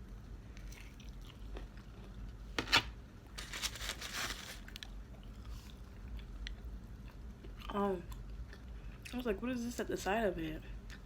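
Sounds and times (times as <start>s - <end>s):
person chewing food: 0.5s - 2.4s
crackly crunching: 0.6s - 5.0s.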